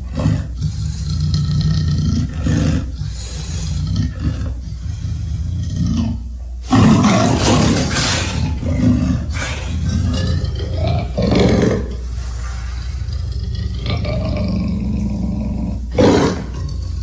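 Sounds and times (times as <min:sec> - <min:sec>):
monster roars: 0:06.7 - 0:12.0, 0:13.6 - 0:16.8.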